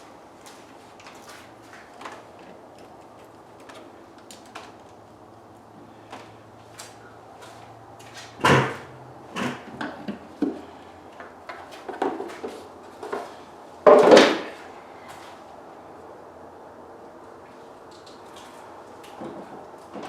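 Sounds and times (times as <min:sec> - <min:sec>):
parts knocking and clattering: 0:08.2 - 0:14.6.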